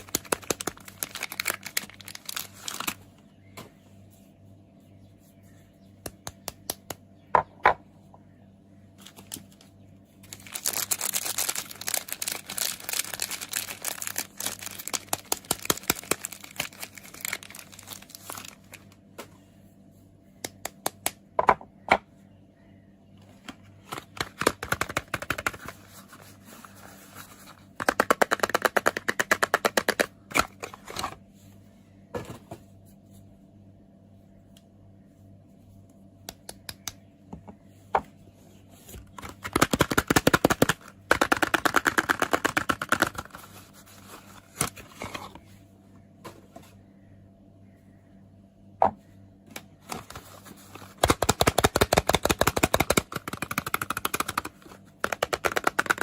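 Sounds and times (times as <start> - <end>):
packaging crinkling: 0.0 - 3.2, 10.2 - 19.0, 39.0 - 45.4.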